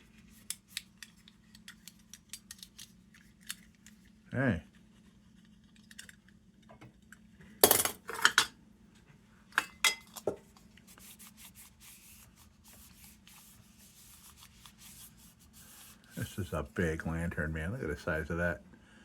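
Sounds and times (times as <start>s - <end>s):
faint rubbing: 10.8s - 17.2s.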